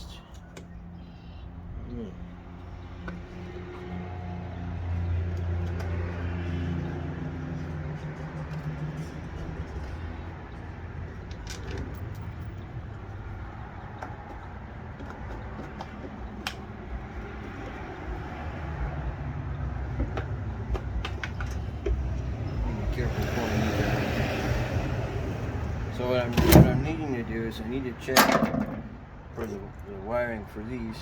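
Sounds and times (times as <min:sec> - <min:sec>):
sharp clicks and knocks: 0:19.9 - 0:22.0, 0:28.2 - 0:29.0.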